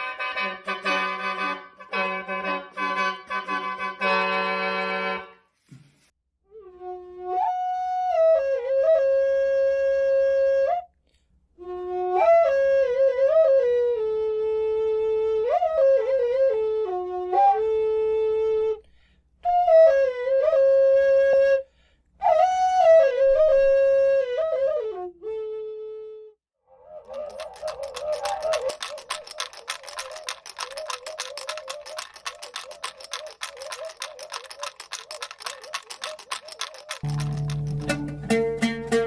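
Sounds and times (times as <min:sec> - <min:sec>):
flute-like wind instrument melody: 0:00.0 - 0:05.4, 0:06.5 - 0:10.9, 0:11.6 - 0:18.8, 0:19.4 - 0:37.5.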